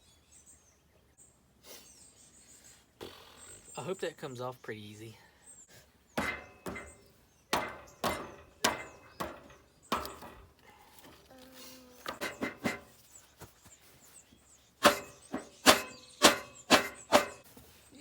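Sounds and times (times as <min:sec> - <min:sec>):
hammer blows on metal: 0:06.2 - 0:10.5, 0:12.1 - 0:13.0, 0:14.8 - 0:17.4.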